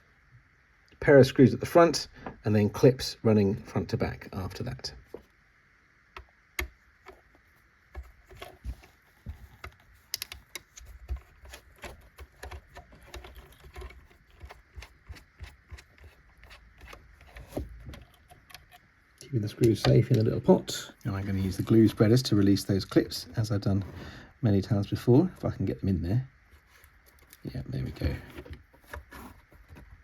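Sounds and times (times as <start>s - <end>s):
handling plastic model: 6.1s - 24.0s, 26.4s - 30.0s.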